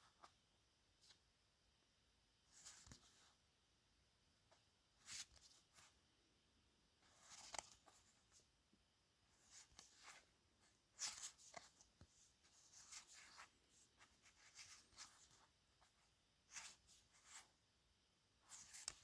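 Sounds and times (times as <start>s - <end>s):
cardboard cards rustling and sliding: 7.0s - 8.4s, 9.3s - 17.6s, 18.5s - 19.0s.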